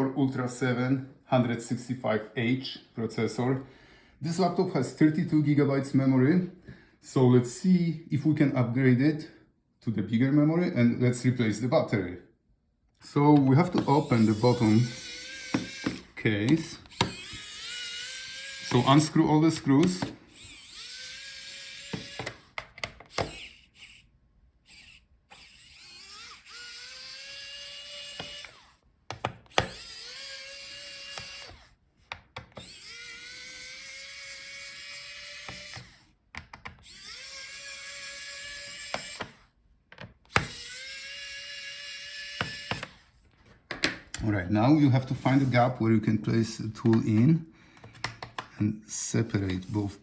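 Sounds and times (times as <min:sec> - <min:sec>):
electric screwdriver whine: 0:13.6 - 0:28.8, 0:29.4 - 0:31.8, 0:32.5 - 0:36.2, 0:36.8 - 0:39.5, 0:40.3 - 0:43.1.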